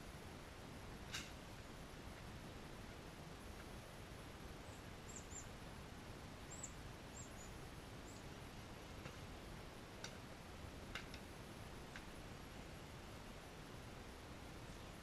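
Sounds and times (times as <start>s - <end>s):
low hiss: 0.0s - 15.0s
small bird chirping: 4.6s - 5.6s, 6.5s - 8.4s
faint sharp clicks: 10.9s - 11.3s.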